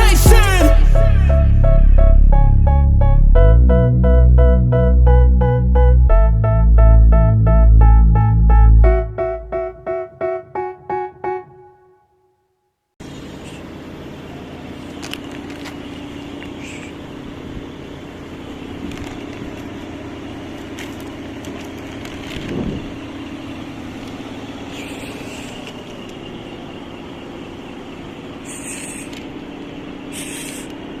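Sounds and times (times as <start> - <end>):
low mechanical hum: 13.0 - 31.0.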